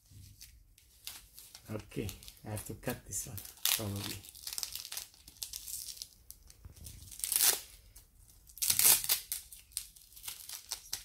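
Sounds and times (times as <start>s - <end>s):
velcro strap ripping: 3.4s - 7.8s, 8.5s - 11.0s.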